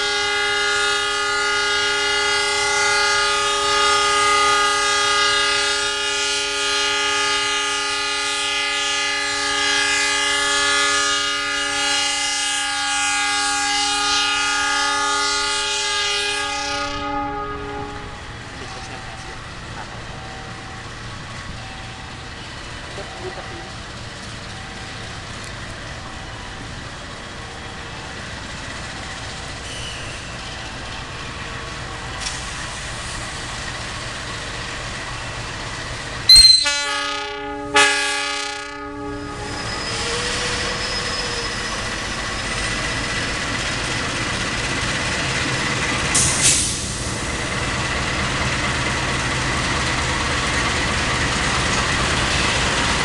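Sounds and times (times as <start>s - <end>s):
locomotive horn blast: 0.0s - 19.4s, 36.3s - 42.0s
train rumble: 0.0s - 53.0s.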